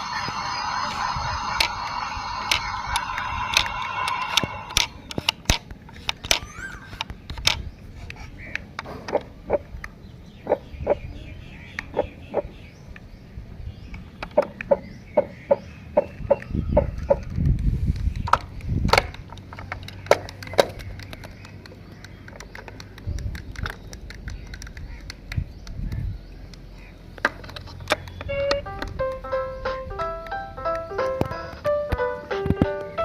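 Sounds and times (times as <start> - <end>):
toys clicking and knocking: 0.0 - 9.3, 18.2 - 29.2.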